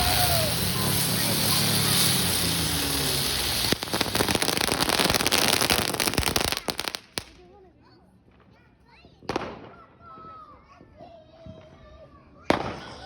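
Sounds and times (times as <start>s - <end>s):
firecrackers crackling bangs: 0.0s - 7.4s.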